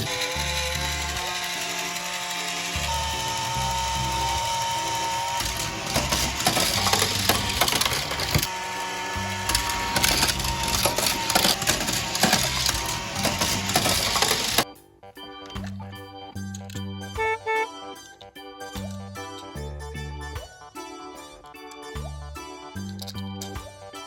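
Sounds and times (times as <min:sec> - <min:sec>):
toy parts clattering on plastic track: 0:00.0 - 0:08.5, 0:09.4 - 0:14.6, 0:22.8 - 0:23.6
background music: 0:02.6 - 0:24.0.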